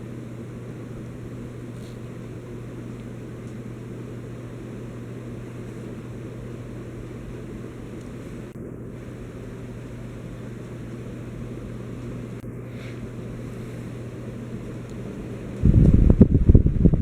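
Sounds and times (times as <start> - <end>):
ceiling fan motor hum: 0.0 - 17.0
rush of air from fan blades: 0.0 - 17.0.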